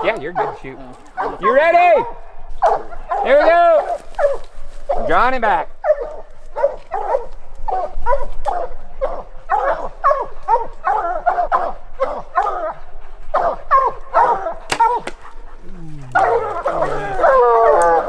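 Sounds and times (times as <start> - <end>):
hounds barking: 0.0 - 5.0, 5.8 - 18.0
sharp click: 14.7 - 15.3.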